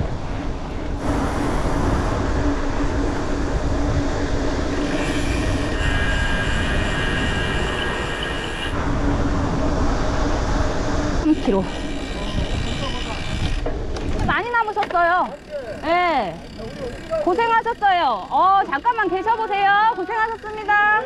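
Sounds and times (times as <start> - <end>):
wind on microphone: 0.0 - 14.5
mountain bike rolling: 0.0 - 21.0
high-pitched squeal: 1.0 - 13.6.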